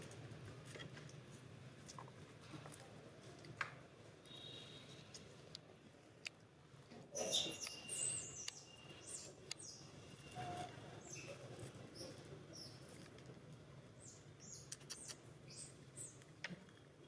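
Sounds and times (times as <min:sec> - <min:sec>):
animal squeaks and chirps: 0:07.2 - 0:09.3, 0:14.4 - 0:15.7
sharp clicks: 0:14.6 - 0:15.2.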